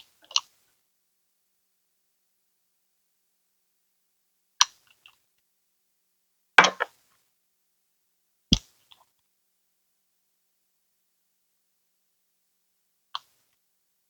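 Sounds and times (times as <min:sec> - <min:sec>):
faint ticks: 0:13.2 - 0:13.6.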